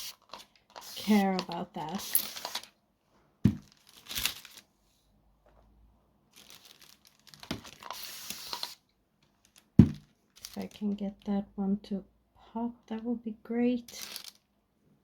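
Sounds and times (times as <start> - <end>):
crinkling rustling handling noise: 0.0 - 2.8, 3.4 - 5.7, 6.3 - 11.3, 13.9 - 14.5.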